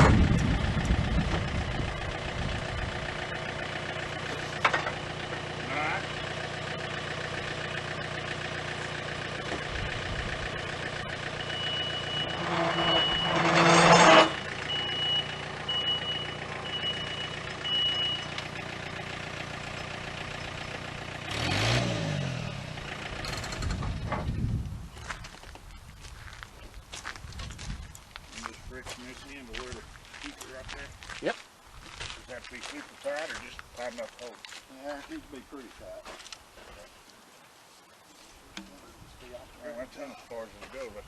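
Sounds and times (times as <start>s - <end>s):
machine engine running: 0.0s - 24.2s
reversing alarm beeping: 11.2s - 18.4s.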